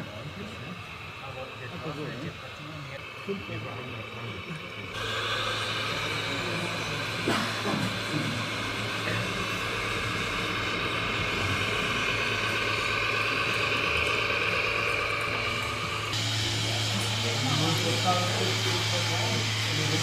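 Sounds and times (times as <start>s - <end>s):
small electric motor whine: 0.0s - 20.0s.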